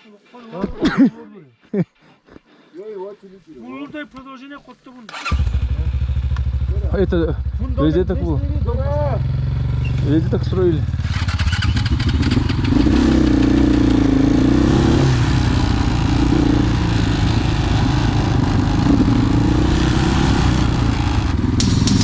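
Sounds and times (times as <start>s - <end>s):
vehicle engine revving: 5.1s - 22.0s.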